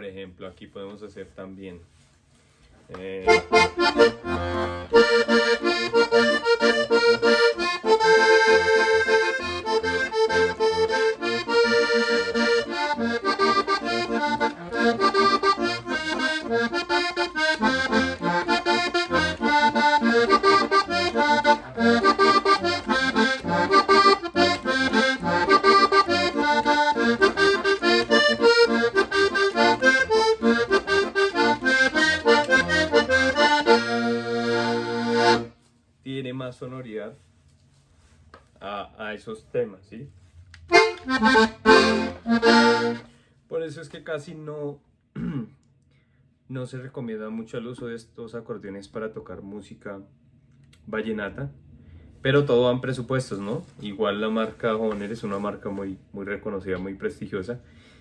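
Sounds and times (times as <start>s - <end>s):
button accordion playing a tune: 3.3s - 35.6s, 40.7s - 43.2s.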